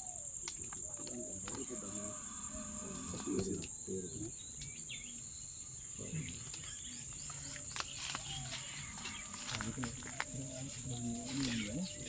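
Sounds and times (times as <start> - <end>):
insects droning: 0.0 - 12.0
low voices murmuring: 0.9 - 4.4, 5.0 - 12.0.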